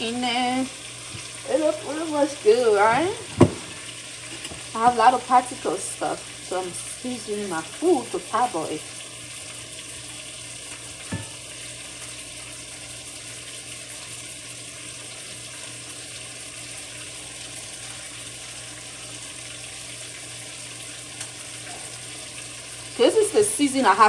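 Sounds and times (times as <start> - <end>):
food sizzling in hot oil: 0.0 - 24.0
knock: 3.4 - 3.7.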